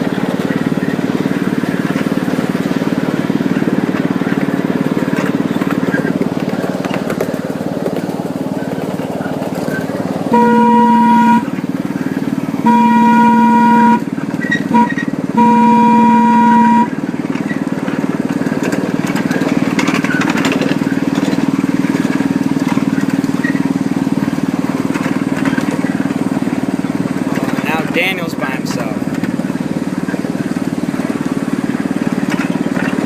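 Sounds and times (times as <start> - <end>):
locomotive engine running: 0.0 - 33.0
locomotive horn: 10.2 - 17.4.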